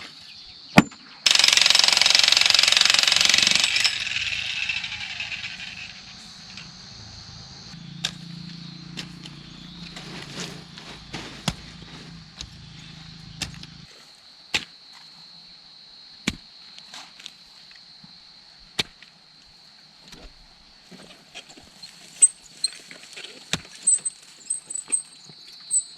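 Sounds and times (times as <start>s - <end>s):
high insect drone: 1.2s - 16.8s.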